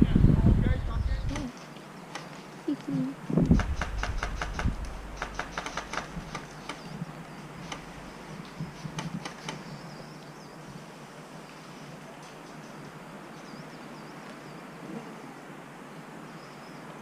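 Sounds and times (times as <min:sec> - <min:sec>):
low thump: 0:03.4 - 0:06.5
airsoft guns firing: 0:03.5 - 0:06.5.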